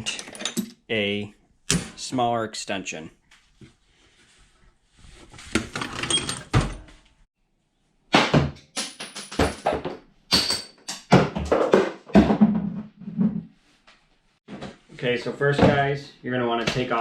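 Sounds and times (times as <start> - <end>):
metal tools rattling: 0.0 - 0.8, 5.7 - 6.9.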